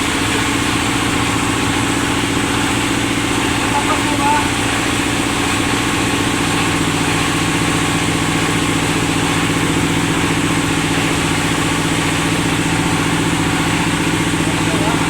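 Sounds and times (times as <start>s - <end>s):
thresher engine running: 0.0s - 15.0s.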